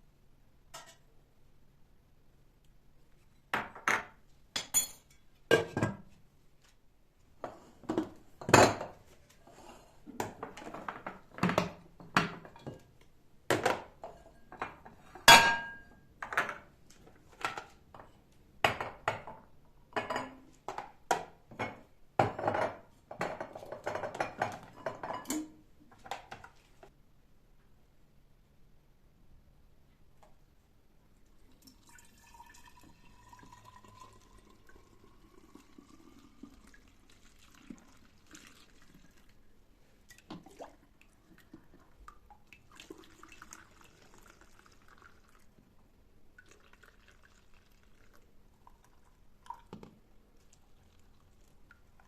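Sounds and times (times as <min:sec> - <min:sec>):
dishes and cutlery clinking: 0:00.7 - 0:01.1, 0:03.4 - 0:06.0, 0:14.0 - 0:16.7, 0:19.9 - 0:26.5.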